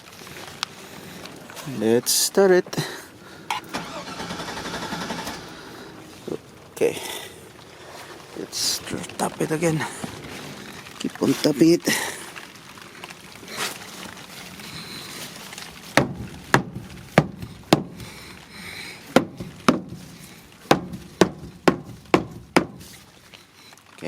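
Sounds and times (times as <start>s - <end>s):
rubber mallet knocking on fuel tank: 16.0s - 18.0s, 19.2s - 20.1s, 20.7s - 22.9s.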